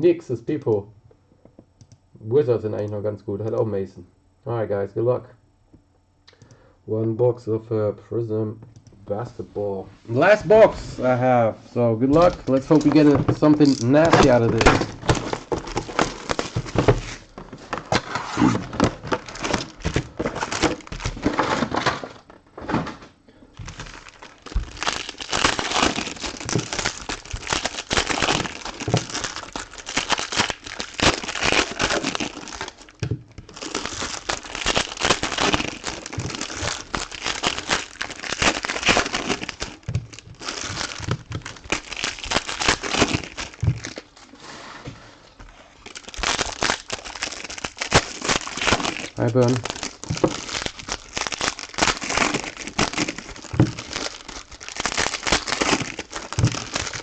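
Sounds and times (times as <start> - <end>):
plastic wrapping crinkling and tearing: 12.0 - 44.3, 45.8 - 57.0.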